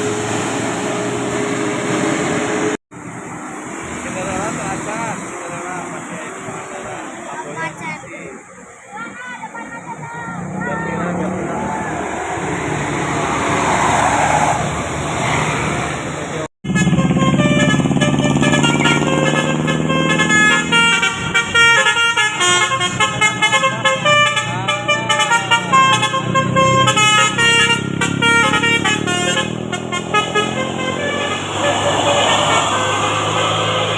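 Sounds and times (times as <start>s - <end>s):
street noise: 0.0s - 33.9s
bus horn playing fast melody: 16.6s - 33.9s.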